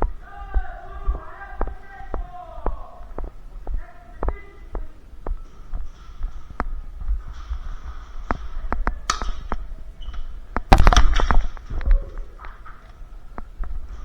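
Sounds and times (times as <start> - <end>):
loud cracks: 10.6 - 13.0.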